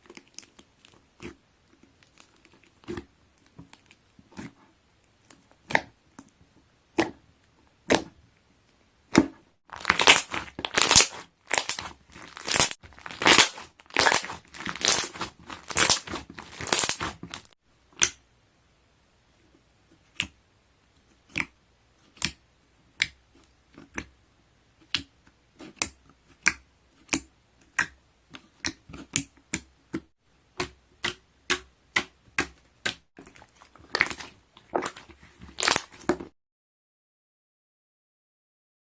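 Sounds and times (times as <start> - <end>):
slime squeezed by hand: 9.7 - 17.5, 33.2 - 36.3.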